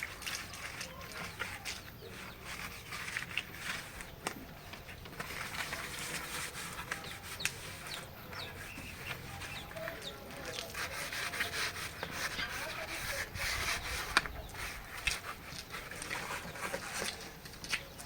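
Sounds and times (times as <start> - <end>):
scratchy scraping and rustling: 0.0 - 18.0
chickens clucking: 3.9 - 14.9.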